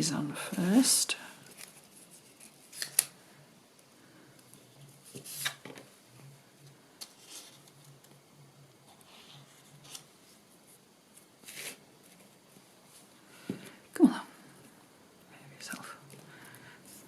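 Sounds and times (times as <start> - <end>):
paper rustling: 1.4 - 3.1, 4.8 - 5.9, 7.0 - 8.2, 8.9 - 10.4.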